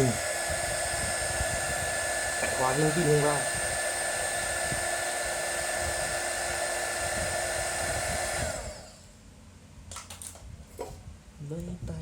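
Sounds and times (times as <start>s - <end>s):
hot-air blower running: 0.0s - 9.2s.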